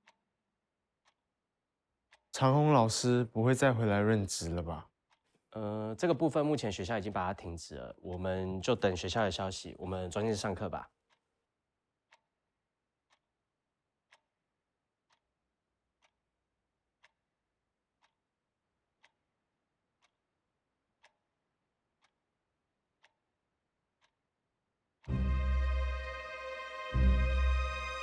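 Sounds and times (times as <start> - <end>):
clock ticking faintly: 0.0 - 0.2, 2.1 - 11.3, 14.0 - 14.3, 15.0 - 15.3, 16.0 - 16.2, 17.0 - 17.2, 18.0 - 18.4, 19.0 - 19.4, 20.0 - 20.3, 21.0 - 21.4, 22.0 - 22.3, 23.0 - 23.3, 23.9 - 24.2.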